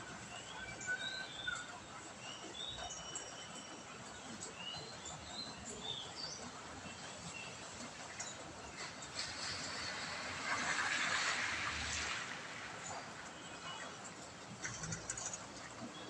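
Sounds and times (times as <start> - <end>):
birds chirping: 0.0 - 9.2
hiss of rain or running water: 3.9 - 16.0.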